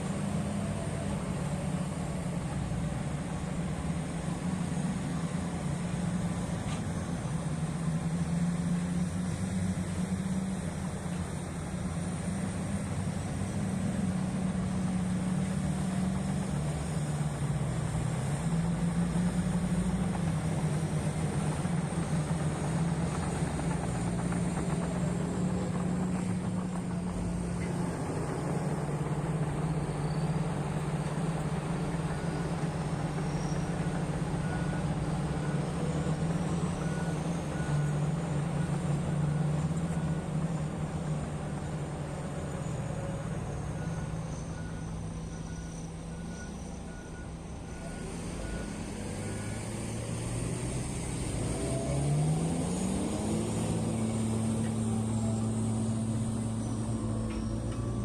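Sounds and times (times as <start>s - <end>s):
heavy diesel engine running: 0.0s - 58.0s
faint beep: 43.7s - 49.6s.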